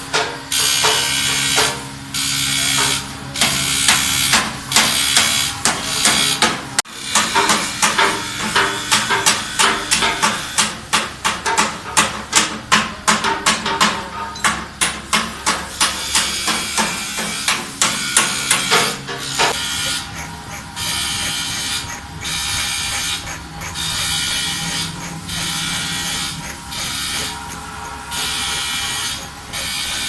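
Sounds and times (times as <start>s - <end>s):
hammer blows: 2.7s - 30.0s
electric power tool running: 19.5s - 30.0s.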